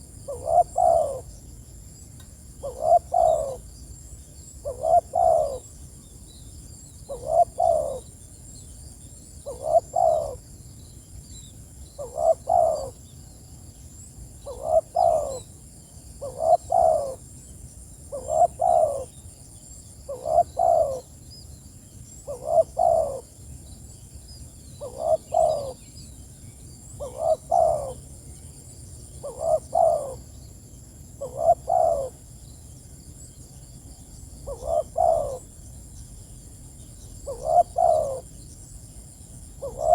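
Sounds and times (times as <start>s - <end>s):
dove cooing: 0.2s - 1.3s, 2.6s - 3.6s, 4.6s - 5.7s, 7.1s - 8.1s, 9.4s - 10.4s, 12.0s - 13.0s, 14.4s - 15.5s, 16.2s - 17.2s, 18.1s - 19.1s, 20.1s - 21.1s, 22.3s - 23.3s, 24.8s - 25.8s, 27.0s - 28.0s, 29.2s - 30.3s, 31.2s - 32.2s, 34.4s - 35.5s, 37.2s - 38.3s, 39.6s - 39.9s
faint high bird chirps: 18.1s - 30.6s, 31.2s - 39.9s.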